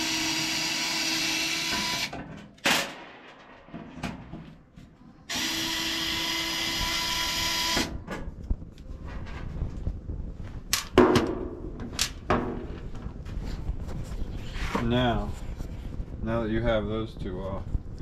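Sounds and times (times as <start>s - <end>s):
cordless drill running: 0.0s - 2.1s, 5.3s - 8.0s.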